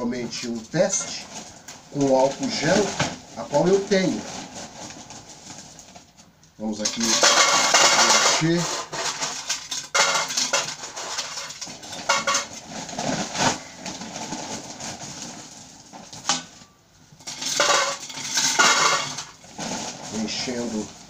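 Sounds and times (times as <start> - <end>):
gravel stones rattling into a pot: 0.0 - 6.0, 6.6 - 16.6, 17.2 - 21.0.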